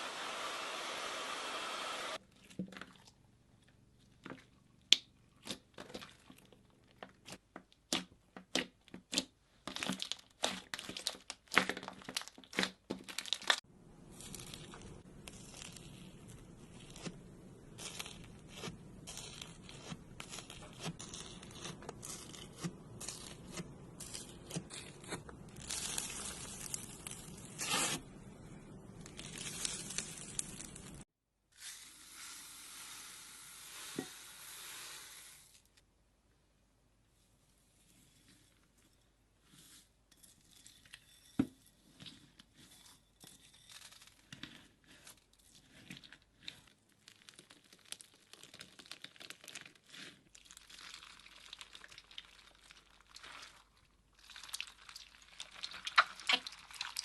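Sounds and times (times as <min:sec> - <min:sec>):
slime squeezed by hand: 0:47.0 - 0:57.0.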